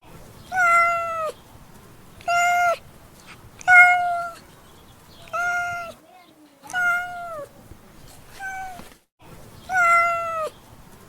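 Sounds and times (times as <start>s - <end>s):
cat meowing: 0.5s - 1.4s, 2.2s - 2.8s, 3.6s - 4.4s, 5.2s - 6.0s, 6.7s - 7.5s, 8.3s - 8.8s, 9.7s - 10.6s.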